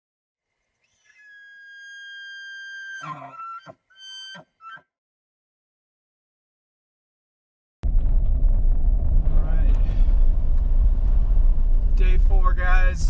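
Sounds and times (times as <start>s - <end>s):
high whistling call: 0.7s - 4.8s.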